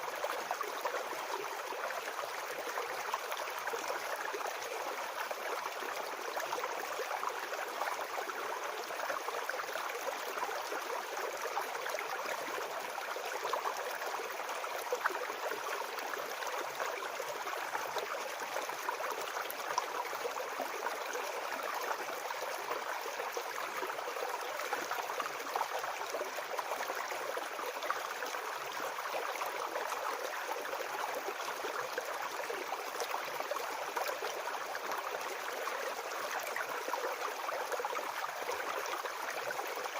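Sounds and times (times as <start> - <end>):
brook babbling over stones: 0.0 - 39.9.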